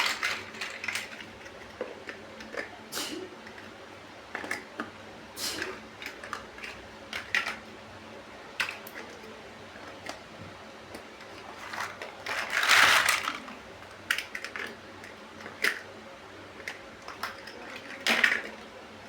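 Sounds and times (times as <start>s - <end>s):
plastic bricks clicking: 0.0s - 1.3s
pieces rattling: 0.0s - 1.7s, 11.4s - 13.5s, 16.7s - 18.6s.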